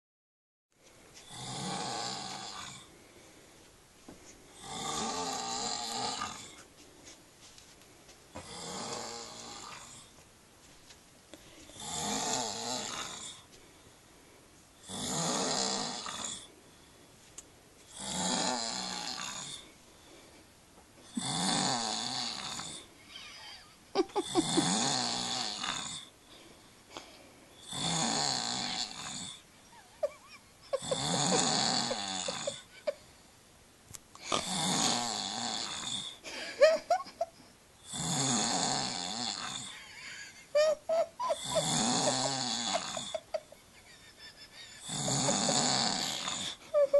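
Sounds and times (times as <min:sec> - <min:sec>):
man snoring heavily: 0:01.3 - 0:02.9, 0:04.6 - 0:06.6, 0:08.4 - 0:10.1, 0:11.7 - 0:13.5, 0:14.8 - 0:16.5, 0:17.9 - 0:19.7, 0:21.1 - 0:22.9, 0:24.1 - 0:26.1, 0:27.6 - 0:29.4, 0:30.7 - 0:33.0, 0:34.2 - 0:37.0, 0:37.8 - 0:40.3, 0:41.0 - 0:43.4, 0:44.8 - 0:46.9.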